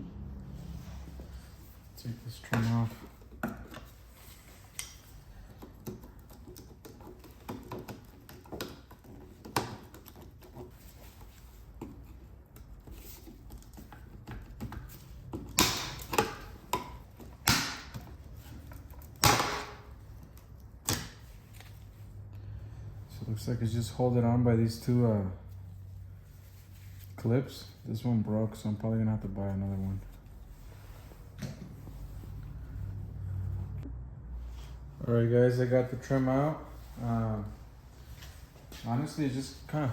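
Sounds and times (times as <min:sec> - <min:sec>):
small clicks and taps: 0:04.8 - 0:10.7.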